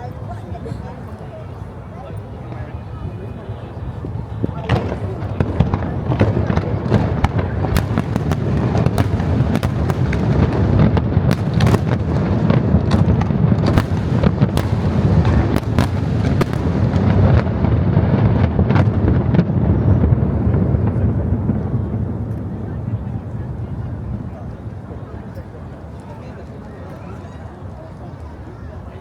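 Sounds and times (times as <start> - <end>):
fireworks bangs and crackles: 0.1 - 29.0
low rumble of booms: 4.4 - 24.9.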